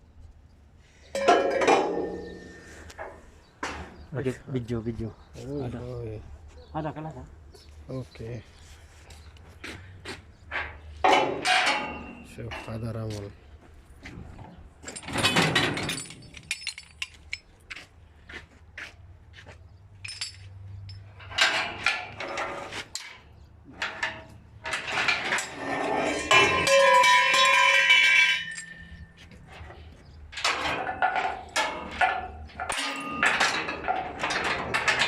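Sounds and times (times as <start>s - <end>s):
metallic clanks and knocks: 1.1s - 4.0s, 10.5s - 13.2s, 14.3s - 17.5s, 20.0s - 35.0s.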